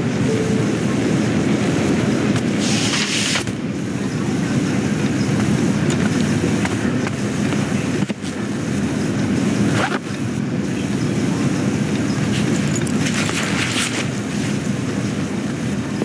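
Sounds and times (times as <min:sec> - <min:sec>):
machinery rumbling: 0:00.0 - 0:08.0.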